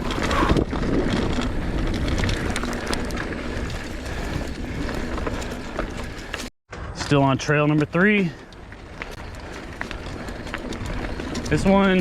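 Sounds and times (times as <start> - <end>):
wind on microphone: 0.0 - 6.1
bike tyres rumbling on dirt: 0.0 - 12.0.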